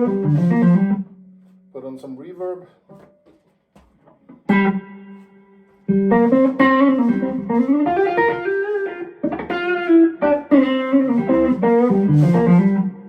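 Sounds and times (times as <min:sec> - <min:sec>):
electric guitar with overdrive: 0:00.0 - 0:01.2, 0:04.4 - 0:13.0.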